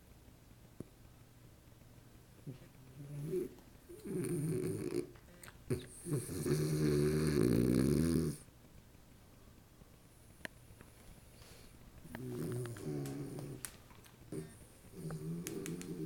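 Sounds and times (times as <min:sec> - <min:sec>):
dog snoring and snorting: 0:02.4 - 0:08.5, 0:12.0 - 0:13.7, 0:14.3 - 0:16.0.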